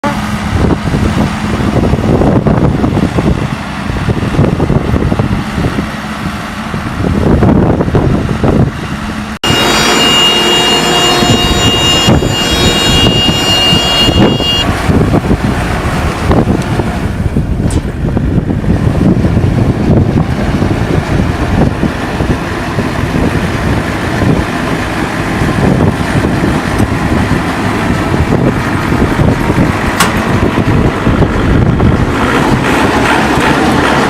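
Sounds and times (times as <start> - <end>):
high mechanical whine: 4.1 - 34.0
hay baler clattering: 23.5 - 34.0.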